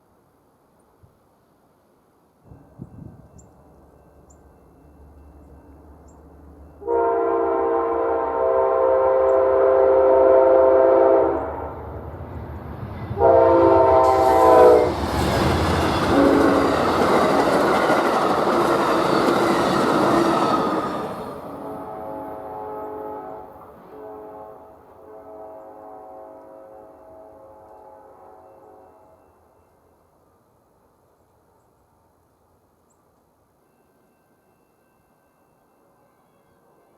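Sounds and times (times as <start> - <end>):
train wheel and rail noise: 0.0 - 36.9
locomotive air horn: 6.8 - 11.9, 13.2 - 15.0, 16.0 - 16.8, 20.8 - 29.4.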